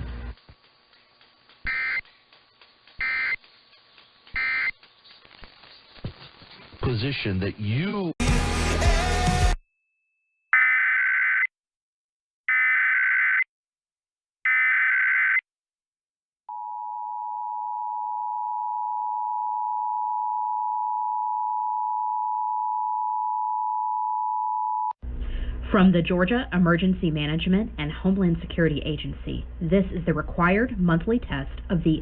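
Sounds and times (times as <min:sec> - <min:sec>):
warbling data tones: 0:01.7 - 0:02.1, 0:03.0 - 0:03.5, 0:04.3 - 0:06.6.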